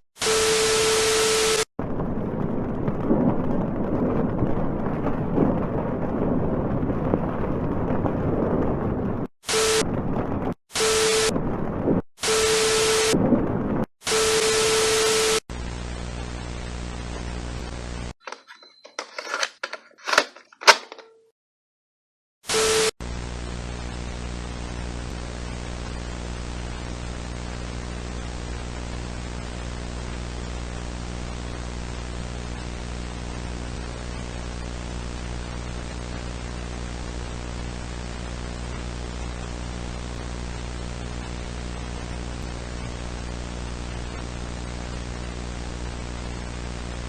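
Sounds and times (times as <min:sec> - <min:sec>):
static hiss: 0:00.2 - 0:01.7, 0:09.4 - 0:10.0, 0:10.7 - 0:11.3, 0:12.2 - 0:13.2, 0:14.0 - 0:18.2, 0:22.5 - 0:47.0.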